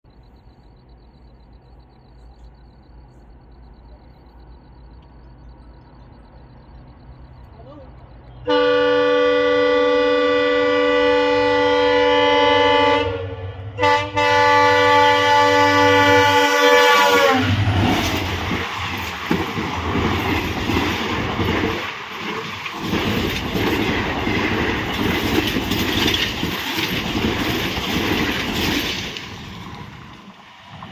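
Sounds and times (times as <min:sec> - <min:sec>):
train horn blast: 0:08.4 - 0:17.6
train wheels clattering over rails: 0:17.5 - 0:30.9.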